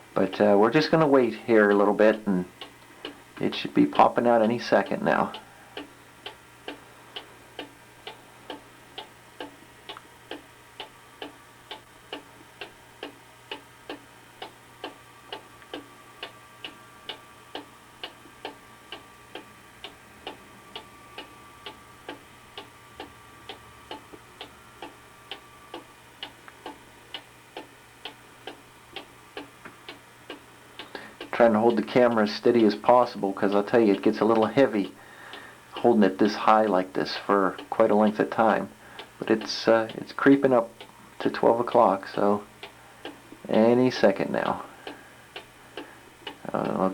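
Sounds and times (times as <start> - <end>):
cuckoo clock ticking: 0.0 - 46.9.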